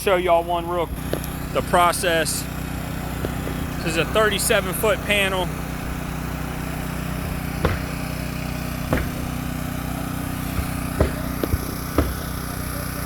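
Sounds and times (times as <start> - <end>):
engine droning: 0.0 - 13.0
sharp knocks: 7.2 - 8.2, 8.8 - 9.5, 10.5 - 12.4.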